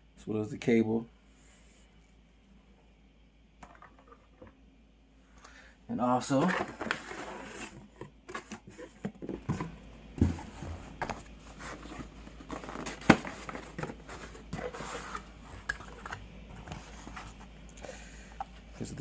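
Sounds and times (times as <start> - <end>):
packaging rustling: 6.3 - 17.6.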